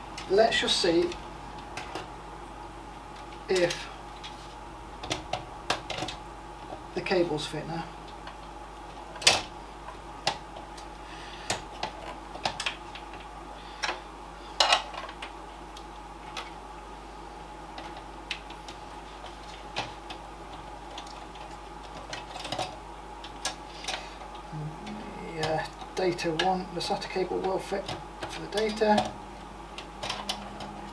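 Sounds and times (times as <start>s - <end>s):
background hum: 0.0s - 30.9s
cable connectors clicking: 27.9s - 30.9s.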